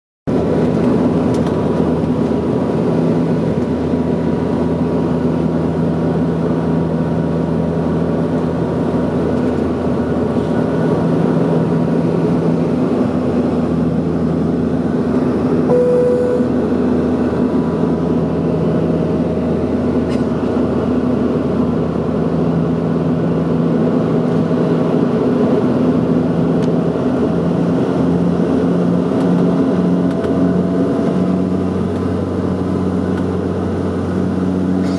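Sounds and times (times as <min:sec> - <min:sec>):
turboprop engines droning: 0:00.3 - 0:34.9
beep tone: 0:15.7 - 0:16.6.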